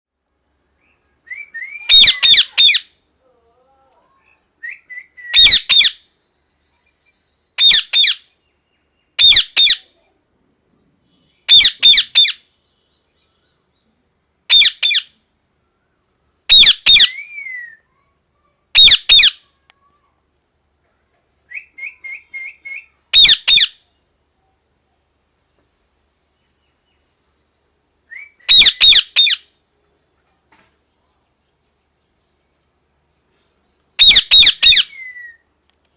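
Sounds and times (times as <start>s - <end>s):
parakeet screeching: 1.9s - 2.9s, 5.4s - 6.0s, 7.6s - 8.2s, 9.2s - 9.8s, 11.5s - 12.4s, 14.5s - 15.1s, 16.5s - 17.2s, 18.8s - 19.4s, 23.1s - 23.7s, 28.5s - 29.5s, 34.0s - 35.1s
parakeet short chirps: 18.8s - 19.4s, 23.2s - 23.7s, 28.5s - 29.4s, 34.0s - 34.9s.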